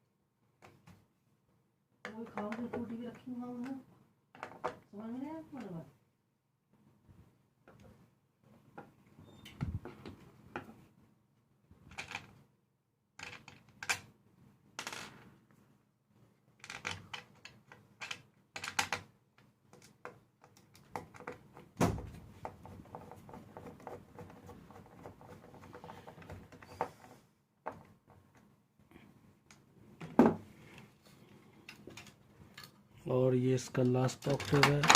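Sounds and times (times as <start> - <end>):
plastic keyboard parts clicking: 11.9 - 12.3, 13.2 - 14.1, 16.6 - 19.1, 33.8 - 34.9.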